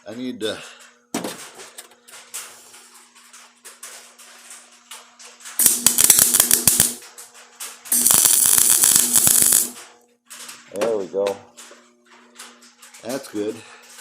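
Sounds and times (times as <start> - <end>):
welding arc crackling: 4.9 - 10.0.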